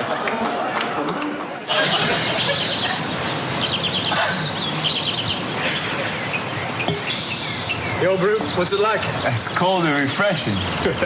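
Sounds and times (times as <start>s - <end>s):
steady hiss: 1.7s - 11.0s
insects chirping: 1.8s - 9.8s.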